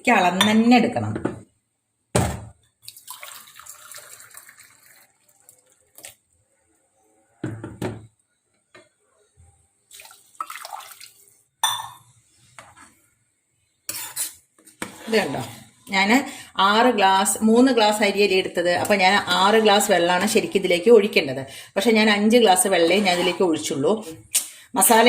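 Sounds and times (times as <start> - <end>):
water pouring into a pot: 2.8 - 6.4, 9.9 - 11.5
glass knocking on pot: 11.6 - 12.0.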